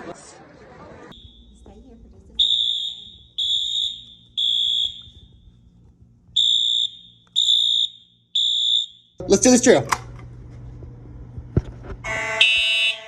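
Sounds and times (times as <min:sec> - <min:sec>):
fire alarm beeping: 0:01.1 - 0:01.7, 0:02.4 - 0:05.4, 0:06.4 - 0:09.2, 0:12.0 - 0:13.0.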